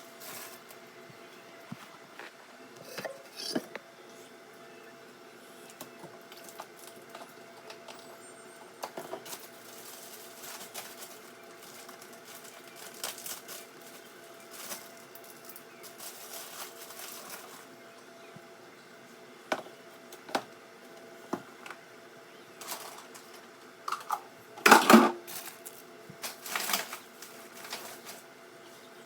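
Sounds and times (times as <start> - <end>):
household items clicking and rustling: 22.6 - 28.2.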